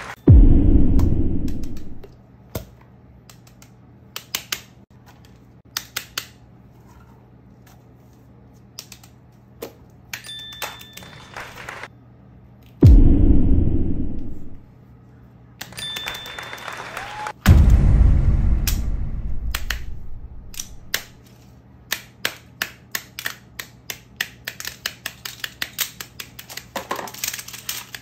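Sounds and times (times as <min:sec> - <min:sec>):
deep boom: 0:00.3 - 0:02.0, 0:12.8 - 0:14.6, 0:17.4 - 0:21.0.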